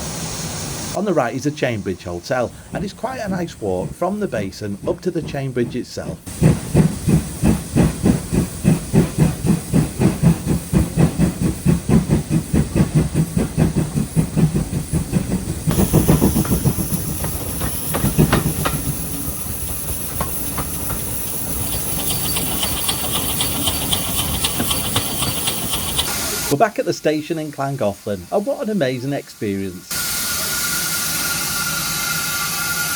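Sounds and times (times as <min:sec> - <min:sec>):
steady hiss of steam: 0:00.0 - 0:32.9
steam locomotive exhaust chuffing: 0:00.0 - 0:32.9.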